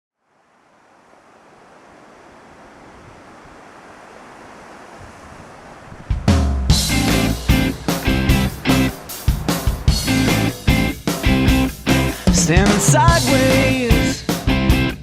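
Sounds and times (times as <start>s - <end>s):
ocean waves washing: 0.2s - 14.5s
loud music: 6.4s - 15.0s.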